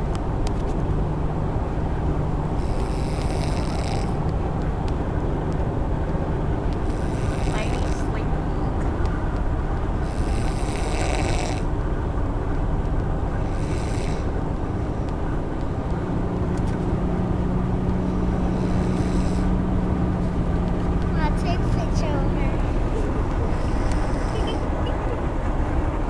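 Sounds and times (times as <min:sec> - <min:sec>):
road and engine noise: 0:00.0 - 0:26.0
steady low hum: 0:00.0 - 0:26.0
heavy snoring: 0:02.5 - 0:04.3, 0:06.8 - 0:08.1, 0:09.9 - 0:11.8, 0:13.3 - 0:14.9, 0:17.8 - 0:19.9, 0:22.8 - 0:24.8.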